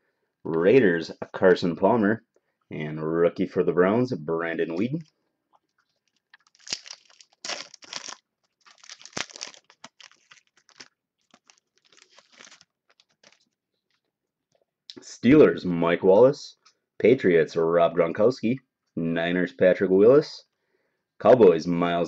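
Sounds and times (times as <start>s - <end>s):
foil wrapper tearing and crinkling: 6.0s - 13.6s.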